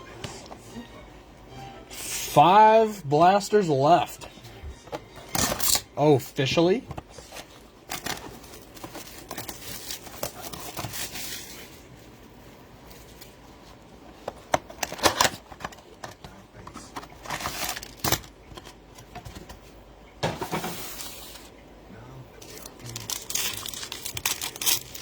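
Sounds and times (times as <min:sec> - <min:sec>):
wrapper crinkling: 0:07.3 - 0:11.9, 0:17.1 - 0:18.6, 0:22.4 - 0:25.0.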